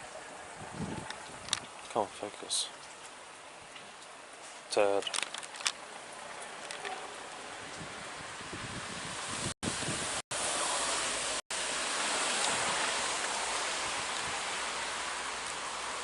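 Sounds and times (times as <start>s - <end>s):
heavy rain hissing: 5.8s - 16.0s.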